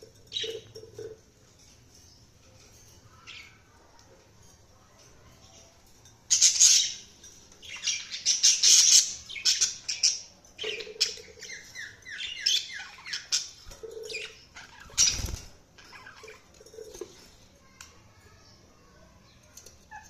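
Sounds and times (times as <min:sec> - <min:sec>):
budgerigars chirping and chattering: 0:00.3 - 0:01.1, 0:06.3 - 0:16.5.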